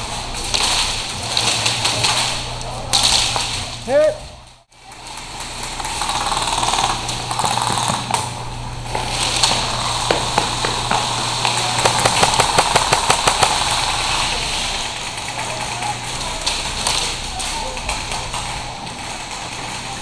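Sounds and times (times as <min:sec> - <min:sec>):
steady low hum: 0:00.0 - 0:20.0
airsoft guns firing: 0:04.8 - 0:20.0.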